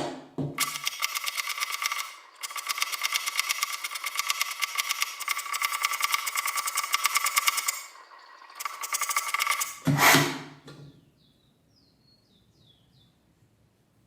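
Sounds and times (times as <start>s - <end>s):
knife rasping through sharpener: 9.6s - 10.5s.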